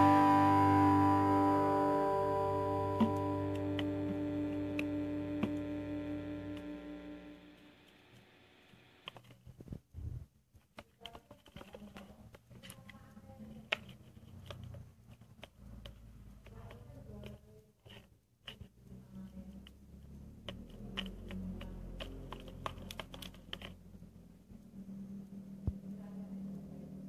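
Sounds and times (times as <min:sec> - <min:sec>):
guitar music: 0:00.0 - 0:07.6.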